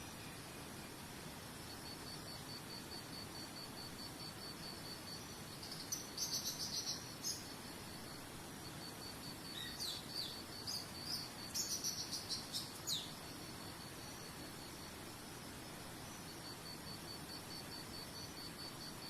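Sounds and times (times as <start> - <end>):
cricket pulsing trill: 0.0 - 19.0
running water hiss: 0.0 - 19.0
small bird chirping: 4.6 - 8.1, 8.7 - 14.5.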